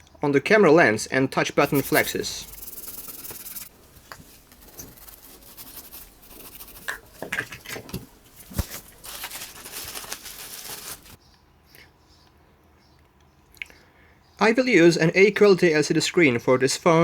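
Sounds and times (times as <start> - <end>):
scraping adhesive residue: 1.6 - 11.2.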